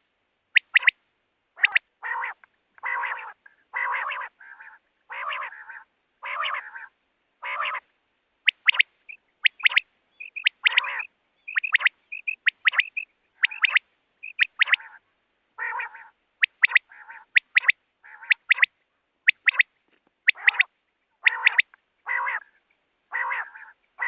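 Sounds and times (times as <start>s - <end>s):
harsh raspy quail calls: 0.5s - 1.0s, 1.6s - 24.0s
sharp clipped bird notes: 8.5s - 14.8s, 17.4s - 18.7s
short high chirps: 8.6s - 14.8s.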